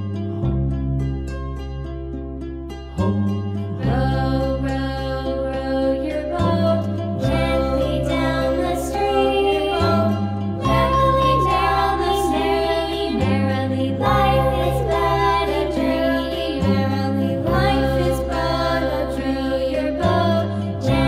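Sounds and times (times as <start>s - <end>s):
light song with singing: 3.7s - 21.0s
steady bass line: 9.8s - 19.2s.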